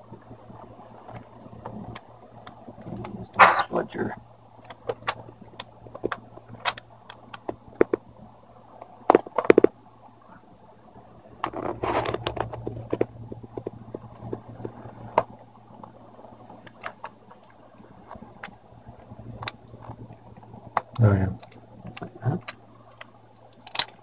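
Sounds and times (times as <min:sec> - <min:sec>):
faint low hum: 0:00.0 - 0:24.0
clicks and taps on plastic parts: 0:04.6 - 0:08.0
scratchy rustle: 0:11.5 - 0:13.0.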